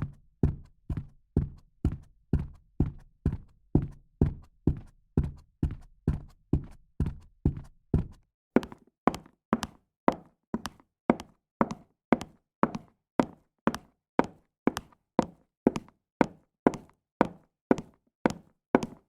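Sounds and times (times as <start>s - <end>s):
high-heeled footsteps: 5.2s - 19.0s.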